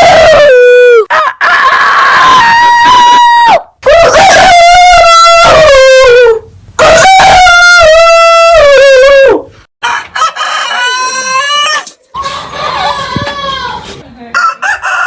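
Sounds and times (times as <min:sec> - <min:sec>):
rooster crowing: 0:09.8 - 0:13.8, 0:14.4 - 0:15.0.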